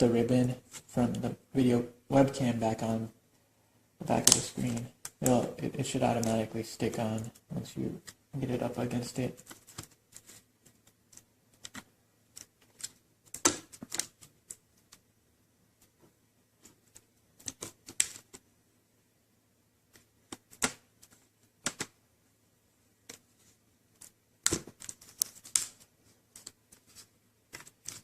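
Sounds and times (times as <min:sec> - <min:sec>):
plastic laptop parts clicking: 0:09.4 - 0:15.0, 0:16.9 - 0:18.4, 0:19.9 - 0:22.0.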